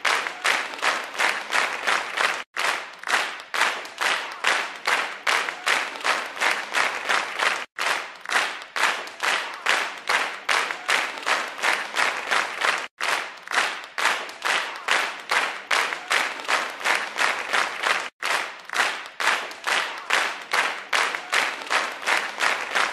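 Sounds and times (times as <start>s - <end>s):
group clapping in unison: 0.0s - 22.9s.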